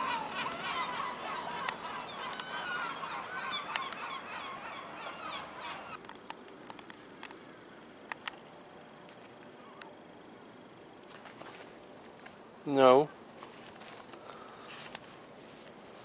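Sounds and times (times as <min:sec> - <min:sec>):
birds calling: 0:00.0 - 0:06.0.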